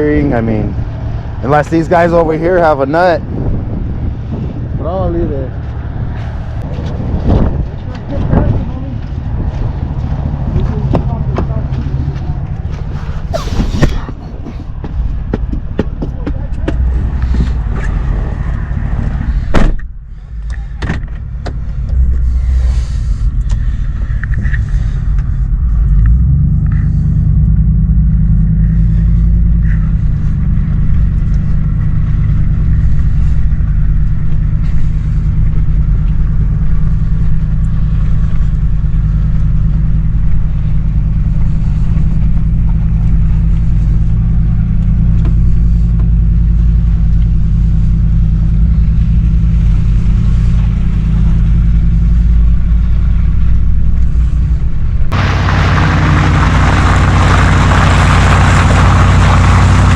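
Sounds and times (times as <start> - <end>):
truck engine running: 0.0 - 18.4, 20.1 - 59.9.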